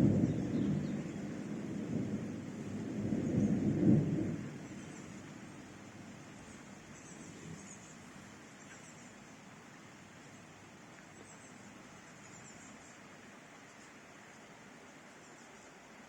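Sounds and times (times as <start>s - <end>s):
thunder rumble: 0.0s - 6.6s
faint hiss of rain: 0.0s - 16.0s.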